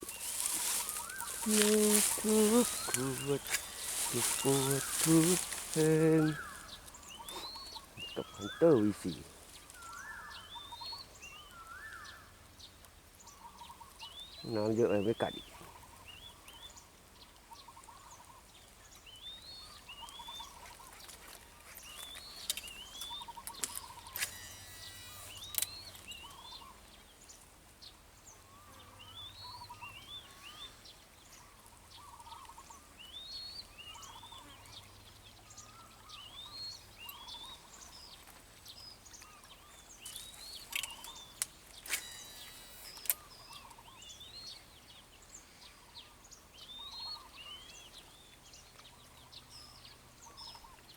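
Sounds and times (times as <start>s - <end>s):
birds warbling and chirping: 0.0s - 12.2s, 13.3s - 16.3s, 19.6s - 26.9s, 38.8s - 48.2s.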